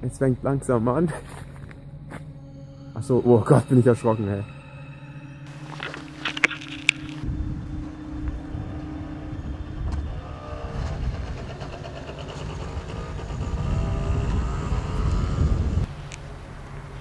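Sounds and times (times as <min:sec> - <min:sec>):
deep rumbling noise: 0:04.5 - 0:17.0.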